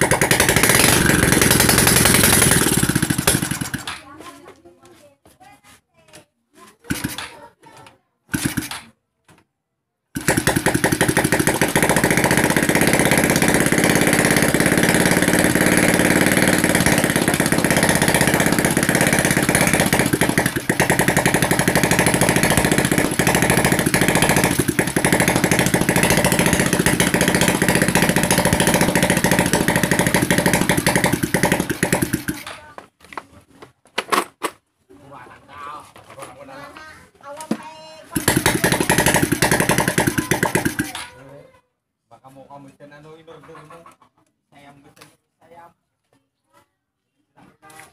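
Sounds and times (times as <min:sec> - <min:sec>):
motorcycle engine running: 0:00.0 - 0:04.0, 0:06.9 - 0:07.2, 0:08.4 - 0:08.7, 0:10.2 - 0:32.7, 0:38.1 - 0:41.1.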